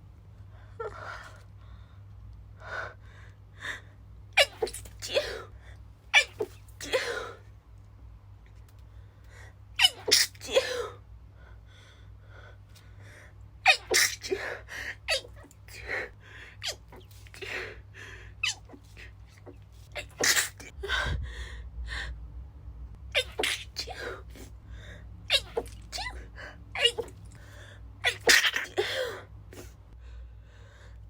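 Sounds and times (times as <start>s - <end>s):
woman's stifled sneezes: 4.4s - 5.5s, 6.1s - 7.4s, 9.8s - 11.0s, 13.7s - 16.0s, 18.4s - 20.8s, 23.2s - 24.5s, 25.3s - 27.2s, 28.0s - 29.7s.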